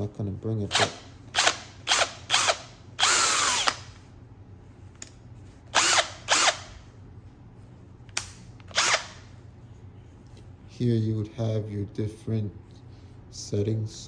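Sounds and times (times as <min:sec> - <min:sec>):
cordless drill whirring: 0:00.7 - 0:03.9, 0:05.7 - 0:06.8, 0:08.7 - 0:09.3.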